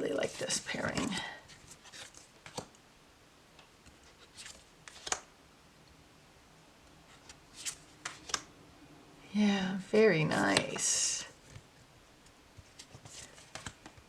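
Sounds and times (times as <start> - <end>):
cards tapping and rustling: 0.9 - 2.7, 4.0 - 5.2, 12.6 - 14.0.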